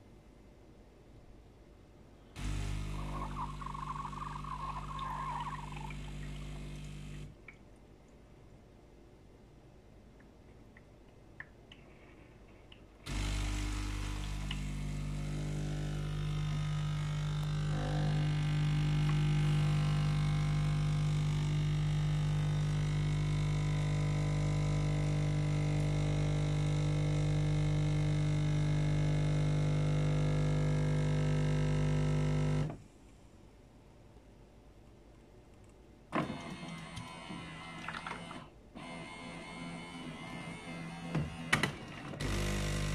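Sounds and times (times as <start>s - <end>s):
coffee machine humming: 2.4s - 7.3s, 13.1s - 32.8s, 36.4s - 38.3s, 41.1s - 42.9s.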